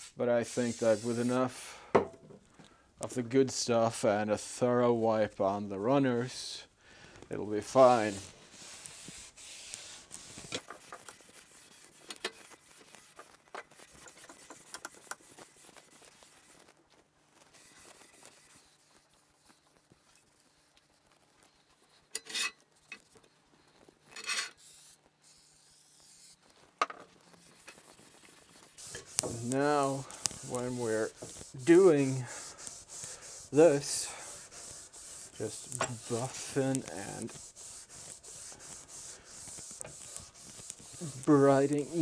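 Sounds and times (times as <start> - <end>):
rag rubbing on metal: 0.0 - 1.6, 7.7 - 16.6, 27.3 - 42.0
short hissing bursts: 0.0 - 1.9, 24.6 - 26.5, 27.4 - 42.0.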